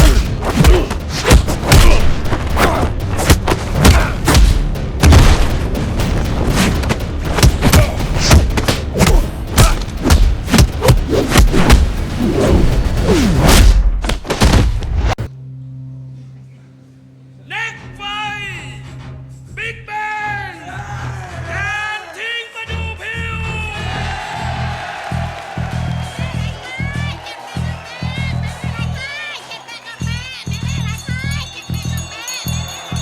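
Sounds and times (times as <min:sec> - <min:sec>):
heavy punch and kick impacts: 0:00.0 - 0:12.1, 0:13.2 - 0:15.0.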